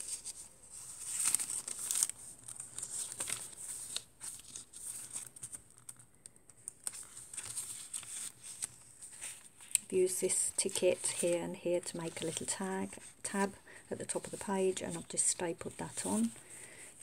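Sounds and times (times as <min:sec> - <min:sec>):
paper rustling and crinkling: 0:00.0 - 0:17.0.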